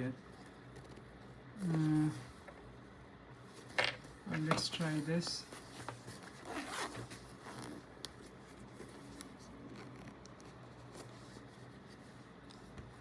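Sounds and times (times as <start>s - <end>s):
fabric handling: 3.6s - 13.0s
zipper rasping: 6.3s - 7.9s.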